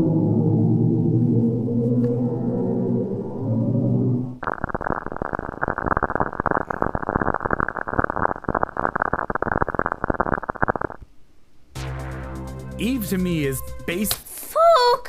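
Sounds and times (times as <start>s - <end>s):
crackling radio static: 4.4s - 11.1s.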